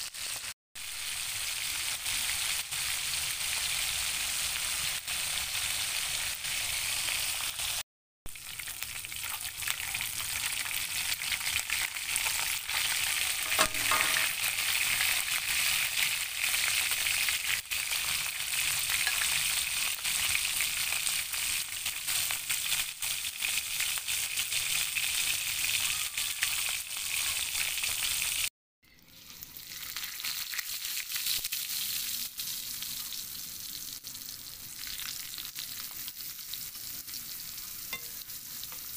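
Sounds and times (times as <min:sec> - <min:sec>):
food sizzling in hot oil: 0:00.0 - 0:38.9
oil crackling and popping: 0:06.9 - 0:28.5, 0:29.1 - 0:38.9.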